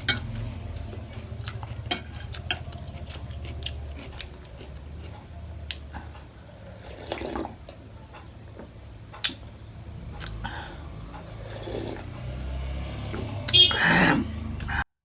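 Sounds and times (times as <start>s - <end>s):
wet slurping: 6.1s - 7.6s, 11.4s - 12.4s.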